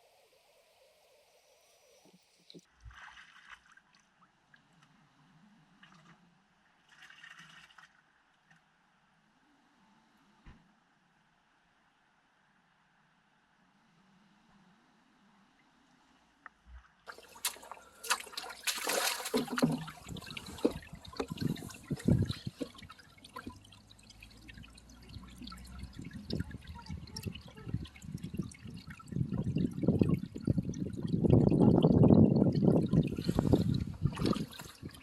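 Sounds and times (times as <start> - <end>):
water splashing and trickling: 2.4 - 4.6, 6.8 - 8.1, 17.1 - 35.0.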